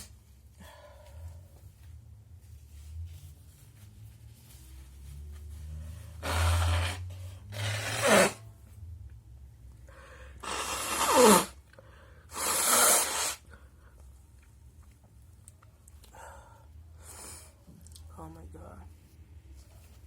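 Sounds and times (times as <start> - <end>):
person sneezing: 10.4 - 11.6.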